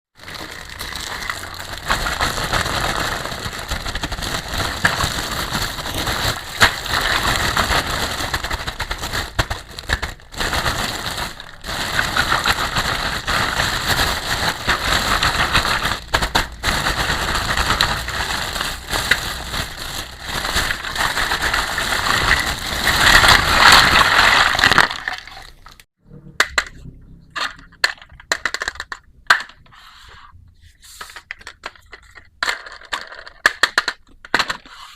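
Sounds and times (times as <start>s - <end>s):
plastic packaging crinkling: 0.2s - 25.8s.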